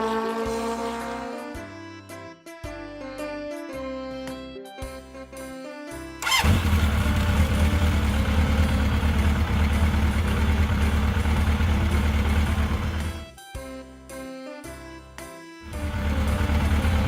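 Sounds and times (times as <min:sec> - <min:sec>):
engine rumbling: 0:06.2 - 0:13.3, 0:15.7 - 0:17.0.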